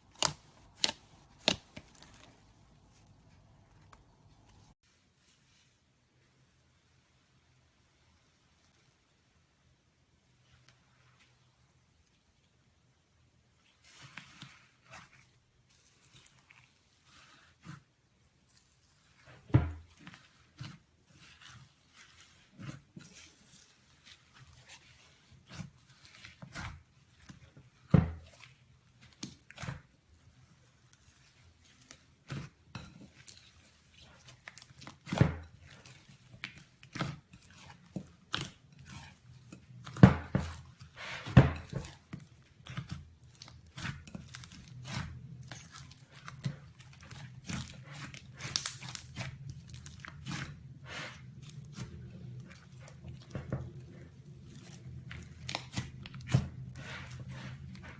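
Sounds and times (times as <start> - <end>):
slime squishing and popping: 0.0 - 2.5, 41.4 - 50.6, 54.4 - 57.2.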